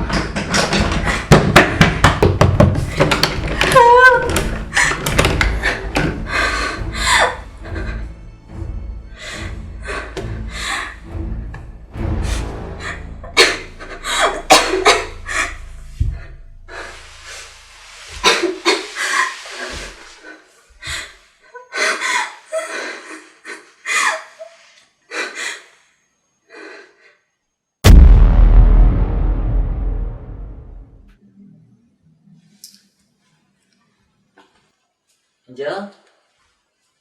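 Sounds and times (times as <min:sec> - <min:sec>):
low music drone: 0:04.3 - 0:18.1, 0:27.9 - 0:31.0
loud booming music hit: 0:27.8 - 0:31.1.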